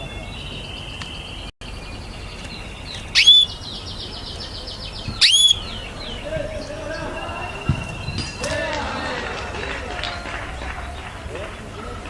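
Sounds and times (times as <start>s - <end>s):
loud sharp chirps: 0.0s - 8.5s
canaries singing trilled phrases: 0.0s - 9.2s.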